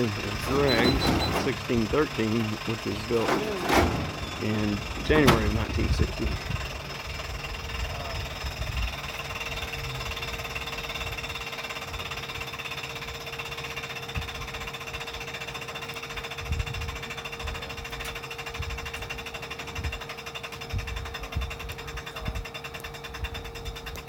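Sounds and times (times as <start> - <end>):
jet engine whine: 0.0 - 11.8.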